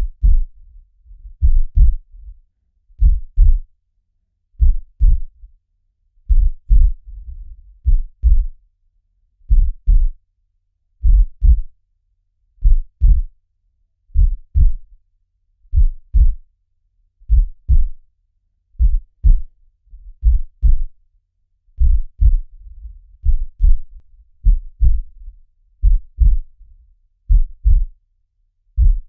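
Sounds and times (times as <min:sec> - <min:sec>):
heartbeat thumps: 0:00.0 - 0:00.5, 0:01.2 - 0:02.1, 0:03.0 - 0:03.7, 0:04.6 - 0:05.3, 0:06.3 - 0:08.6, 0:09.5 - 0:10.2, 0:11.0 - 0:11.7, 0:12.6 - 0:13.3, 0:14.2 - 0:14.8, 0:15.7 - 0:16.4, 0:17.3 - 0:18.0, 0:18.8 - 0:19.6, 0:20.2 - 0:21.0, 0:21.8 - 0:26.6, 0:27.3 - 0:28.0, 0:28.8 - 0:29.0.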